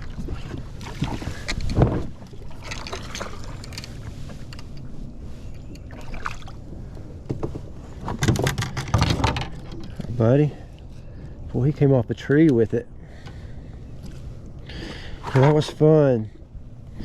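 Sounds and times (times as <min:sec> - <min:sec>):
water splashing: 0:00.0 - 0:03.8, 0:05.9 - 0:06.6.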